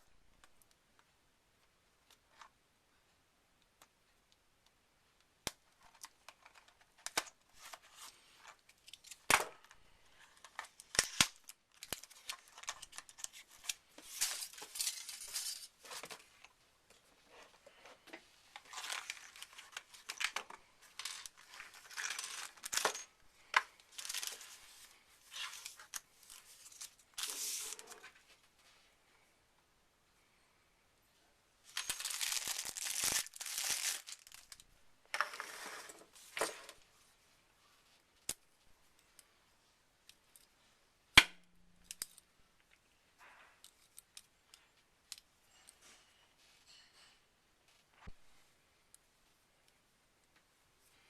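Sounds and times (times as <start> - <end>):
packaging crinkling and tearing: 18.6 - 23.0, 23.9 - 24.6, 31.7 - 34.6.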